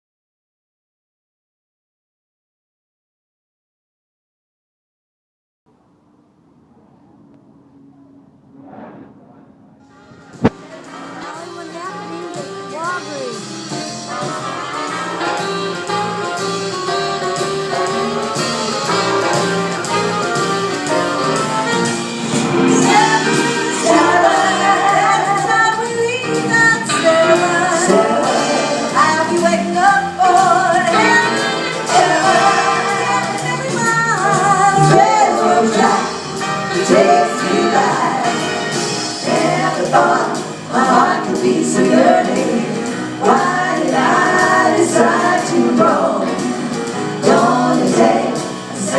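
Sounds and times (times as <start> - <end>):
jazz music: 8.5 - 48.9
women singing in harmony: 22.7 - 48.9.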